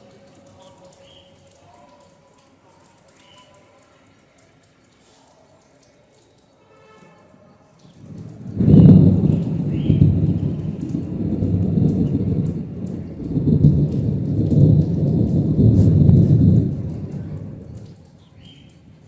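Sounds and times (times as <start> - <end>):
rolling thunder: 8.0 - 18.1.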